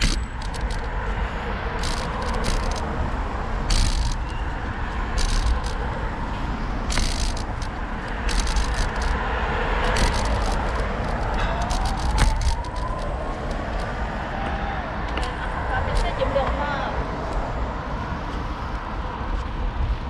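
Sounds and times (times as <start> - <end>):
bicycle rattling: 0.0 - 14.0
road noise: 0.0 - 20.0
wind rumble on microphone: 0.0 - 20.0.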